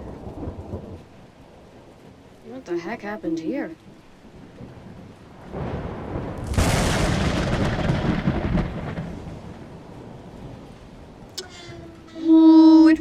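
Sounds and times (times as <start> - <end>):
loud rumbling crash: 5.6 - 9.3.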